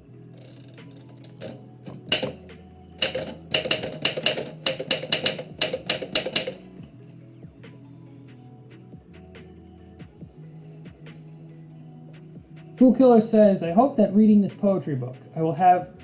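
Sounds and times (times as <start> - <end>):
faint background music: 0.0 - 16.0
typewriter keys striking paper: 3.0 - 6.8.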